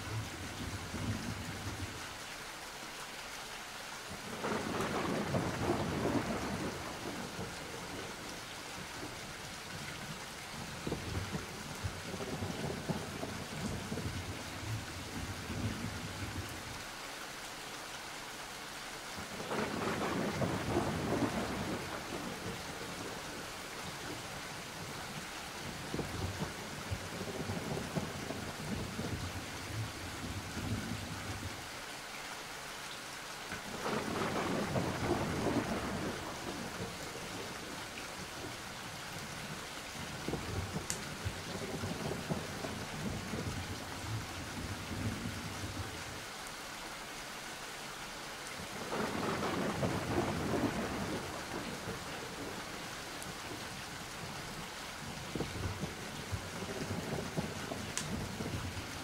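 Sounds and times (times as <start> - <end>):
steady rain: 0.0 - 59.0
rolling thunder: 4.3 - 8.2, 19.4 - 23.2, 33.7 - 37.8, 48.7 - 52.8.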